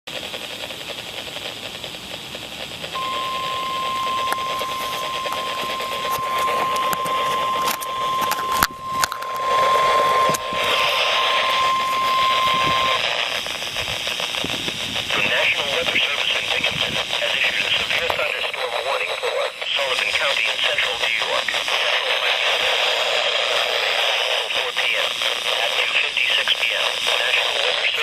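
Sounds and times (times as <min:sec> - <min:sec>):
radio static: 0:00.1 - 0:28.0
steady high alarm tone: 0:03.0 - 0:14.4.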